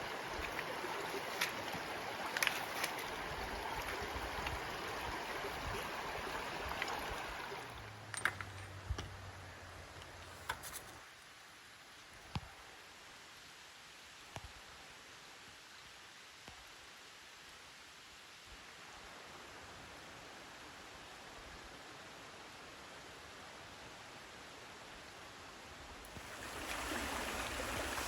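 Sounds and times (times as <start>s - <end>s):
creek water rushing: 0.0s - 10.8s, 26.0s - 28.0s.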